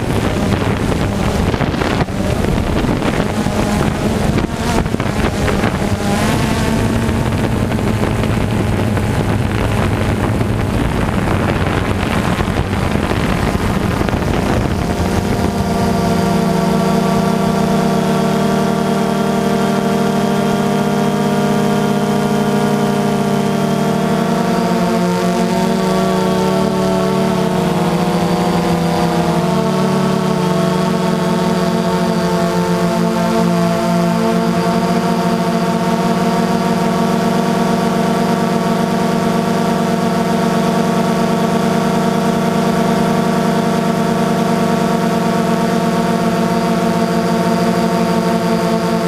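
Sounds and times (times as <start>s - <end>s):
wind buffeting microphone: 0.0s - 18.7s
drone with pitched overtones: 0.0s - 49.0s
engine hum: 0.0s - 49.0s.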